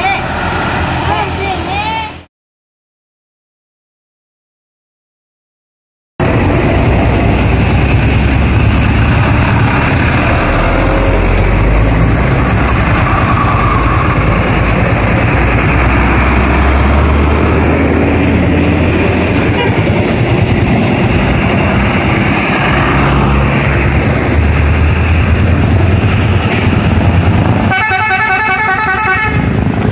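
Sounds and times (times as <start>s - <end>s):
tyre and road noise: 0.0s - 2.3s, 6.2s - 29.9s
deep engine rumble: 6.2s - 29.9s.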